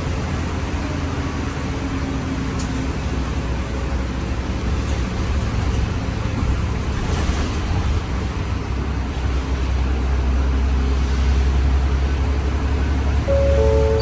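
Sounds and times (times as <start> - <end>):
bus engine drone: 0.0 - 14.0
road noise hiss: 7.7 - 14.0.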